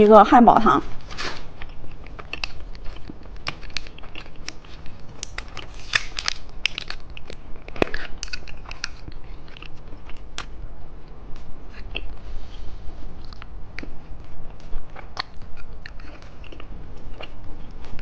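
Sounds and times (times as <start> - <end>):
candy wrapper crackling: 1.0 - 10.6.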